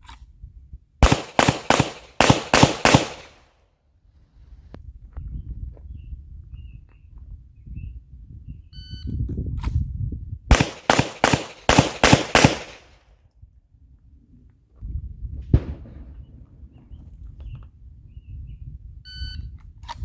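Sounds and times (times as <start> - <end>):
handgun shots: 1.0 - 3.4, 10.5 - 12.9.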